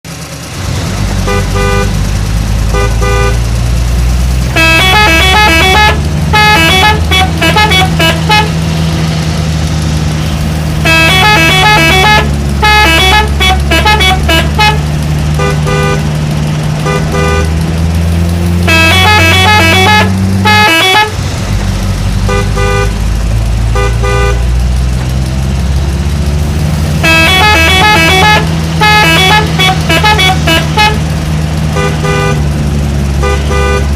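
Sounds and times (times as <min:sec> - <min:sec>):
truck engine drone: 0:00.0 - 0:33.9
musical horns playing melodies: 0:04.5 - 0:08.6, 0:10.8 - 0:16.1, 0:16.8 - 0:17.6, 0:18.7 - 0:21.2, 0:27.0 - 0:31.0, 0:33.2 - 0:33.9.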